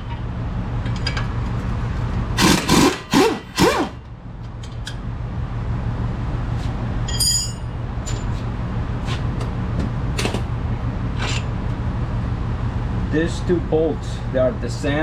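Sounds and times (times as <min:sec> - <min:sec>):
low machine hum: 0:00.0 - 0:15.0
ringing metal clink: 0:07.1 - 0:08.3.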